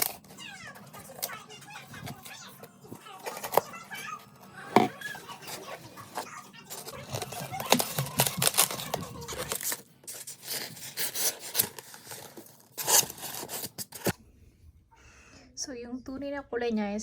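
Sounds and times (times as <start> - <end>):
packaging rustling and tearing: 0.0 - 2.4, 4.8 - 14.2.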